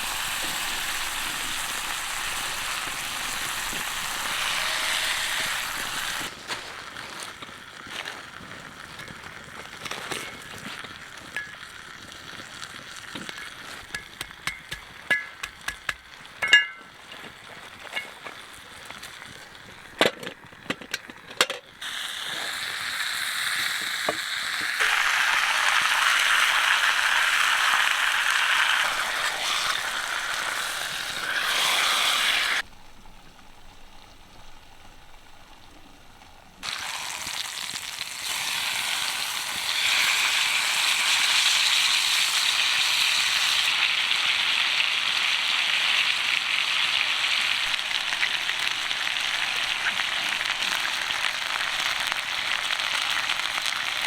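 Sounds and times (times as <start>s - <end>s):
ham sizzling in a pan: 0.0s - 54.0s
metal clinks against a pan: 13.3s - 16.9s.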